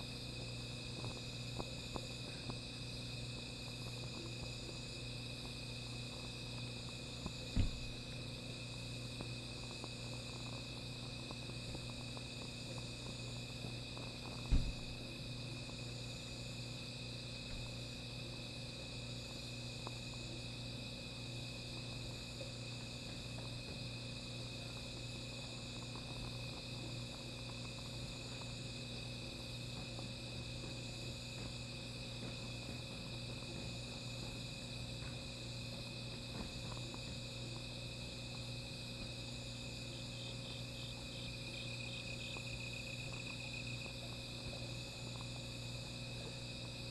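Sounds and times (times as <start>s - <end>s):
fire crackling: 0.0s - 17.9s, 21.2s - 40.2s
crickets and insects trilling: 0.0s - 46.9s
fast pulsing insect chirp: 0.0s - 46.9s
dull thump: 7.6s - 7.9s, 14.4s - 14.9s.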